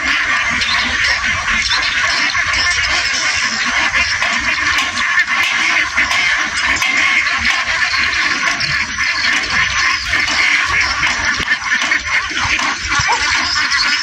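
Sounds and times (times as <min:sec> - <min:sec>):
flock of ducks quacking: 0:08.5 - 0:14.0.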